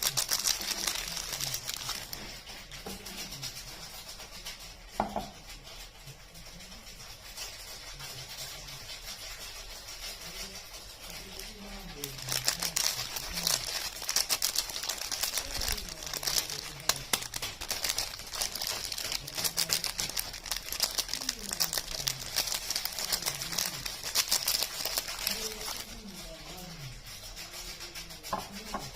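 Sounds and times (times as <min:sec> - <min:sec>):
soap wrapper crinkling: 0:00.0 - 0:02.5, 0:11.0 - 0:26.1.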